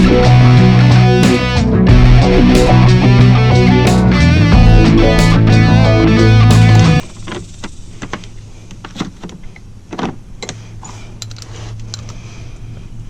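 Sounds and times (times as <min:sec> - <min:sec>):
background music: 0:00.0 - 0:07.0
steady low hum: 0:00.0 - 0:08.8
metallic clicks of hand tools: 0:11.2 - 0:12.2.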